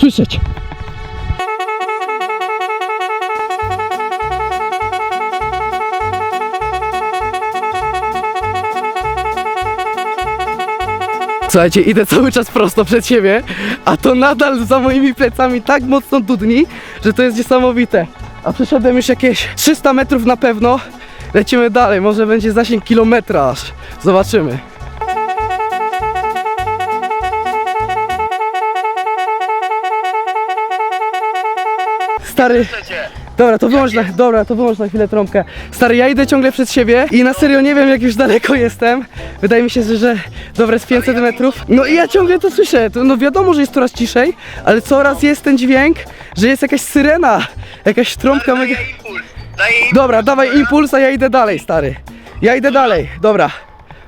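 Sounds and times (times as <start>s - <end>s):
low rhythmic thumping: 0.0s - 44.2s
music bass beat: 0.9s - 29.1s, 44.8s - 53.2s
loud electric horn blaring: 1.4s - 12.2s, 25.0s - 32.4s.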